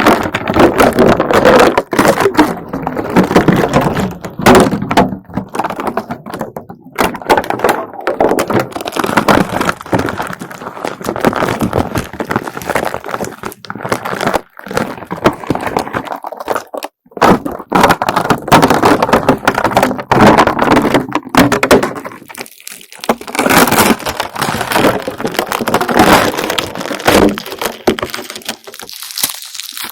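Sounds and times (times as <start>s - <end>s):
slime peeling sticky crackles: 22.1s - 29.9s.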